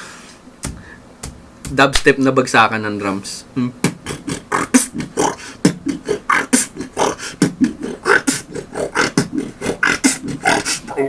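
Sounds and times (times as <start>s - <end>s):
man beatboxing: 3.6s - 11.0s.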